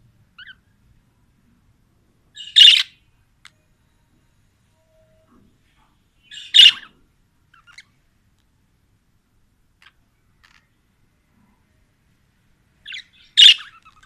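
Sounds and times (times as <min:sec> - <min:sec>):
budgerigar squawk: 0:02.4 - 0:02.9, 0:06.3 - 0:06.9, 0:12.9 - 0:14.0.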